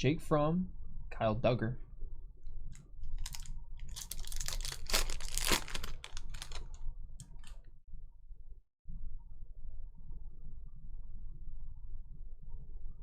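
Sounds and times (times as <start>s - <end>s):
trading cards flipped through: 3.1s - 7.6s.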